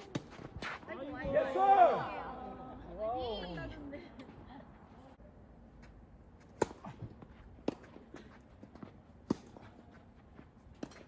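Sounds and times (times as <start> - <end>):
tennis ball struck by rackets: 6.5 - 8.0, 9.2 - 9.6.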